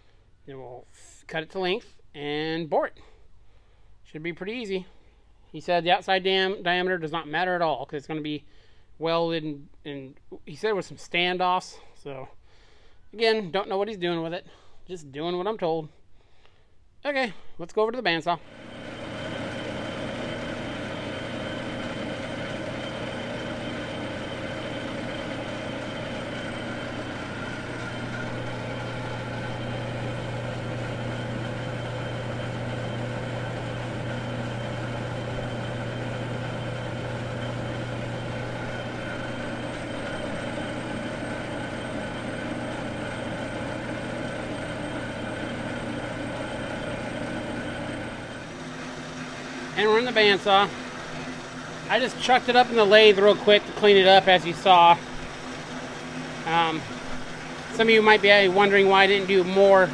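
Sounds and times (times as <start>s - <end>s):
metal lathe humming: 18.4s - 59.9s.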